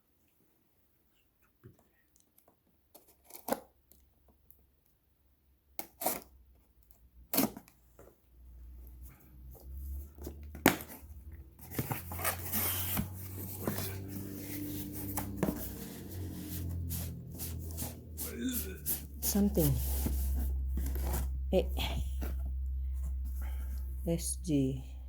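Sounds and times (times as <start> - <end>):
tape tearing: 2.9 - 3.7, 5.8 - 6.3, 7.3 - 7.8
cardboard rustling: 9.5 - 21.5.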